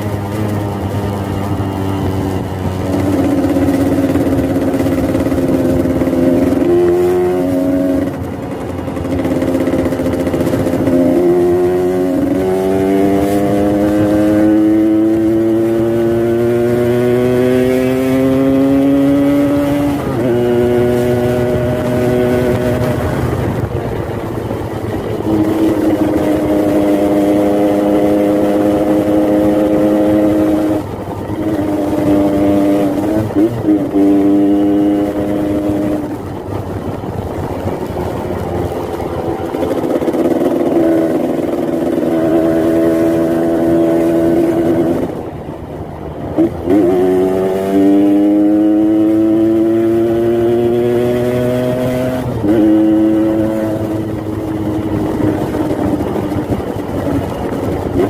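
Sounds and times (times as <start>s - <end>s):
motorcycle engine revving: 0.0s - 58.0s.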